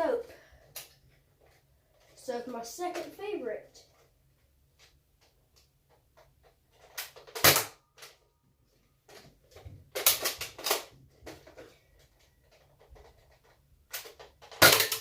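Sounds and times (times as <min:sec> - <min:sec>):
toy blaster plastic clicks: 0:13.9 - 0:15.0.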